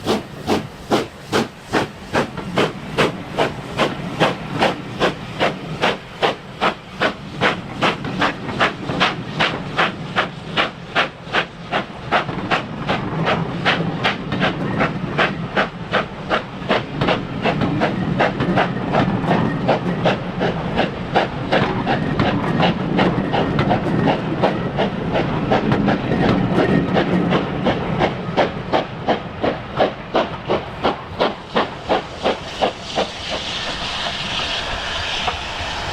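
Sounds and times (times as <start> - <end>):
steam hiss: 0.0 - 35.9
steam locomotive chuffing: 0.0 - 35.9.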